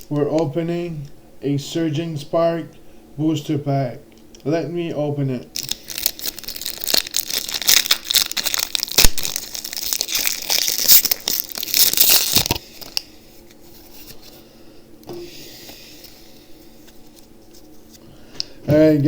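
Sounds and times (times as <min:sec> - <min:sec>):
foil wrapper tearing and crinkling: 0:05.6 - 0:13.1
faint rustling handling: 0:12.6 - 0:14.5, 0:15.5 - 0:18.2.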